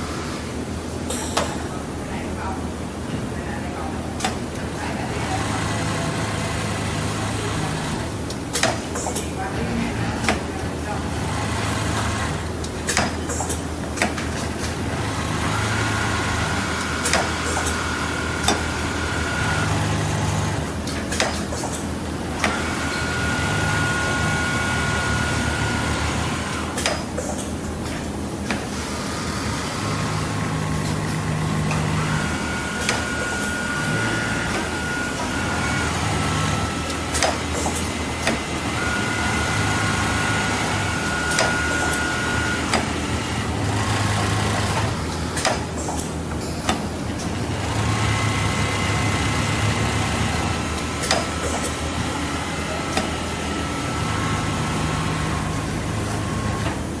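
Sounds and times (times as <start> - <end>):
sewing machines humming: 4.7 - 8.6, 9.6 - 27.4, 28.2 - 46.3, 46.9 - 57.0
machine whining tones: 31.6 - 37.5.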